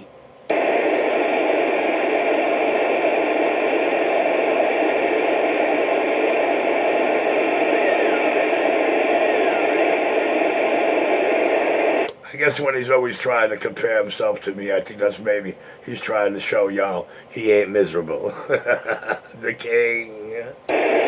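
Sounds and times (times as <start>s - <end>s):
radio static hiss: 0.0s - 21.0s.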